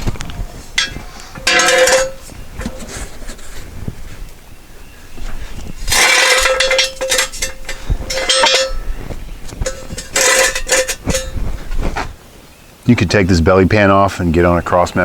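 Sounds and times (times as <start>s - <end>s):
metal clanking and rattling: 0.0s - 3.9s, 5.2s - 12.1s
metallic ringing tone: 0.8s - 3.0s, 5.9s - 11.6s.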